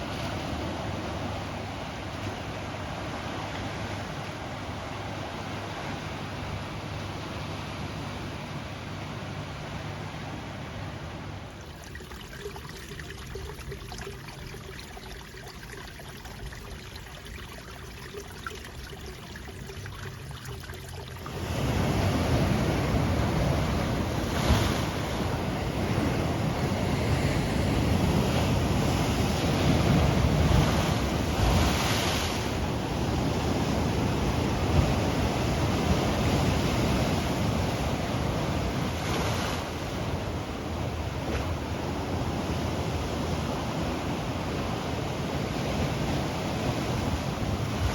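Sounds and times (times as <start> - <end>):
ocean waves breaking: 0.0 - 47.9
wind: 0.0 - 47.9.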